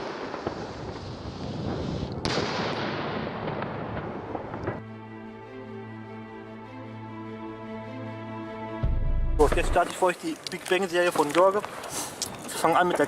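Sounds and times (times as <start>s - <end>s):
fireworks bangs and crackling: 0.0s - 4.8s, 9.4s - 10.2s, 12.5s - 13.0s
music: 4.8s - 9.9s.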